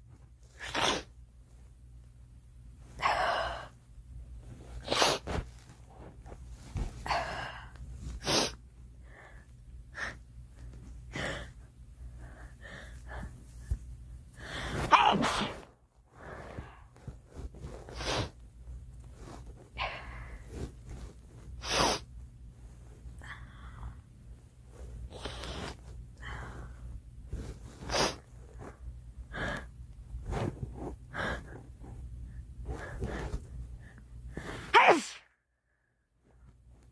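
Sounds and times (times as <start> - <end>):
girl sneezing: 14.9 - 15.6, 34.7 - 35.3.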